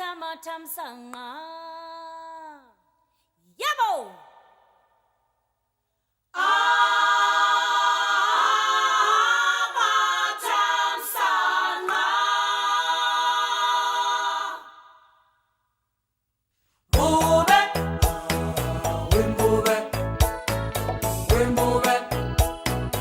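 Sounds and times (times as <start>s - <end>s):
a cappella harmony singing: 6.4s - 15.3s, 16.9s - 23.0s.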